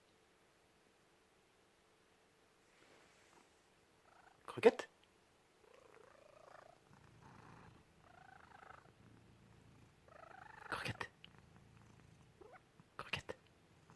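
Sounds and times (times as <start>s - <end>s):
cat snoring: 5.8s - 12.6s.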